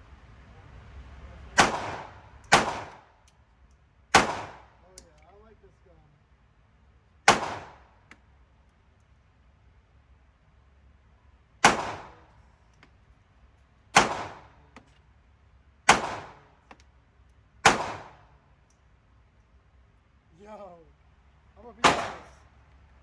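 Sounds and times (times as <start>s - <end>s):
pistol shots with echo: 1.6s - 3.1s, 4.1s - 4.8s, 7.3s - 8.0s, 11.6s - 12.3s, 14.0s - 14.6s, 15.9s - 16.5s, 17.6s - 18.3s, 21.8s - 22.4s.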